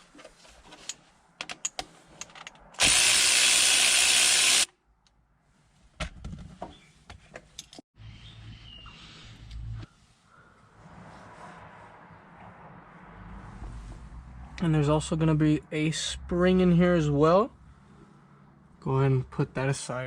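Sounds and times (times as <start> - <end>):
power tool burst: 2.8 - 4.7.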